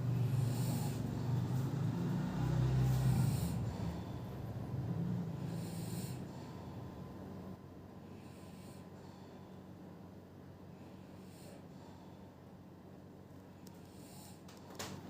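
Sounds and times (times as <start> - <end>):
hissing breaths: 0.0 - 7.0
person snoring: 0.2 - 4.0.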